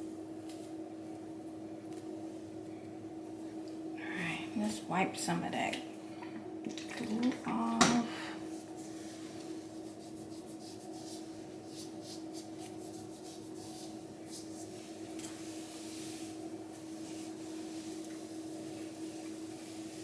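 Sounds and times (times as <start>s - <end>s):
steady low hum: 0.0s - 20.0s
wipe rubbing across skin: 8.5s - 20.0s.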